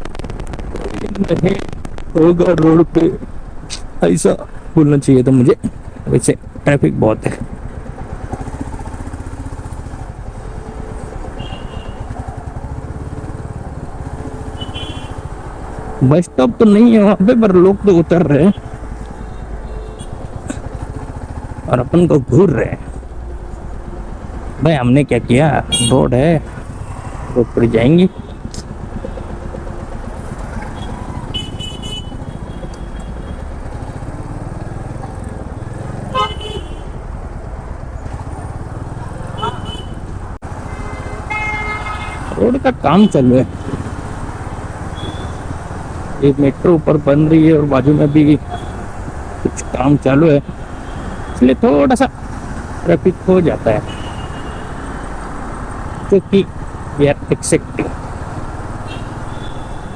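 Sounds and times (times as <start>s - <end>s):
motorcycle engine running: 5.7s - 16.1s, 16.8s - 24.6s, 25.6s - 49.5s, 52.1s - 59.9s
vehicle horns honking: 10.6s - 12.3s, 14.4s - 15.4s, 18.4s - 21.6s, 25.6s - 26.1s, 30.4s - 34.0s, 35.7s - 37.0s, 39.2s - 45.7s, 47.7s - 51.6s, 53.7s - 55.1s, 58.8s - 59.9s.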